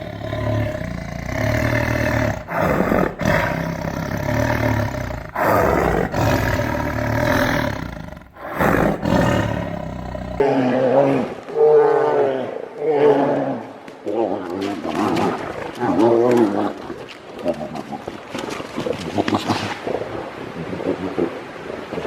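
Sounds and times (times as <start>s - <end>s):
large animal roaring and growling: 0.0s - 10.9s.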